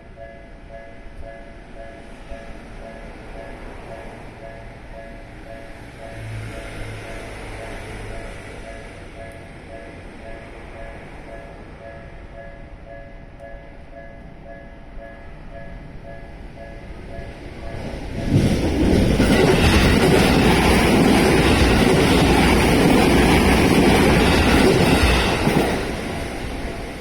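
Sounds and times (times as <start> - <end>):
level-crossing bell dinging: 0.0 - 18.1
train wheels rushing on rails: 1.9 - 11.7, 16.1 - 27.0.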